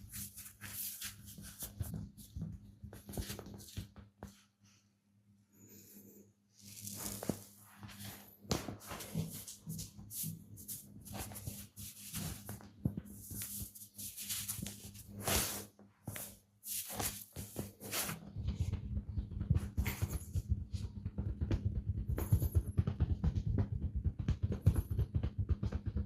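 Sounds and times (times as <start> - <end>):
hands rubbing skin: 0.0 - 1.9, 6.7 - 18.2.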